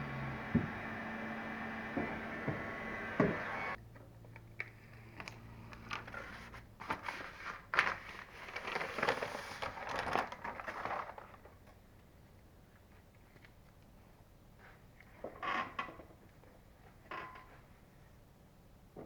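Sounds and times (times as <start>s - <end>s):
sheet material crinkling: 6.8s - 11.5s.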